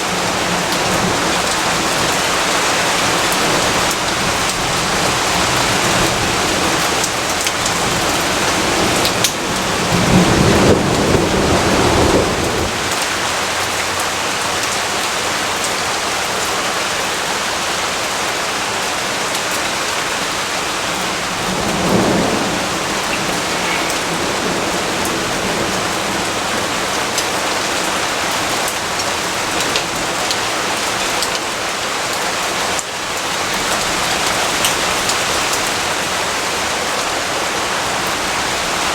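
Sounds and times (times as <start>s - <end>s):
heavy rain hissing: 0.0s - 38.9s
low thunder rumbles: 3.0s - 13.3s, 20.7s - 27.7s.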